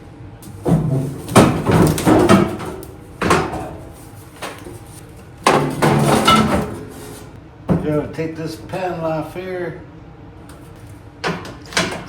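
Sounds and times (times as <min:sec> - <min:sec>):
metal parts clanking and rattling: 0:05.4 - 0:07.3.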